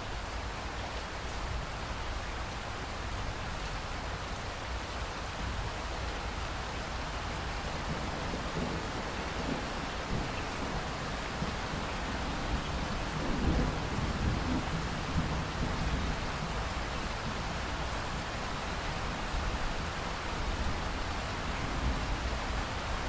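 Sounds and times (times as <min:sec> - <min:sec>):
steady rain falling: 0:00.0 - 0:23.0
low rumble of thunder: 0:07.8 - 0:17.7.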